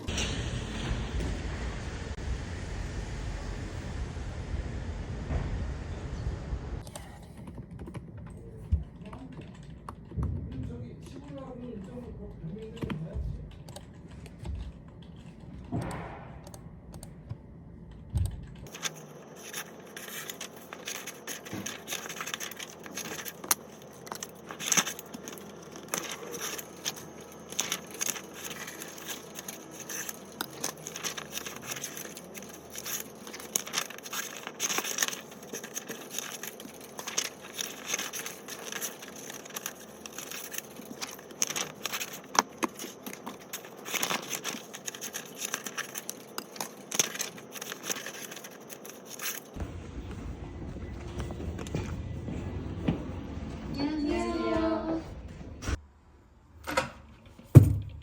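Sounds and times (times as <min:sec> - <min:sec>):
paper rustling and crinkling: 0:18.6 - 0:49.7.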